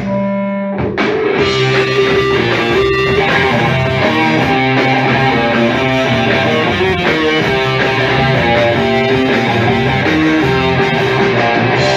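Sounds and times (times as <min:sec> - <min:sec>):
live rock band playing: 0:00.0 - 0:11.9
electric guitar sustained notes: 0:01.4 - 0:11.9.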